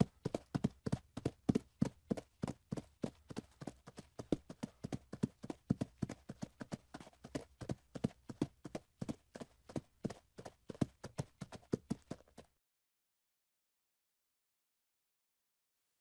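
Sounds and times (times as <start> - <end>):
hooves clopping on hard ground: 0.0 - 12.5.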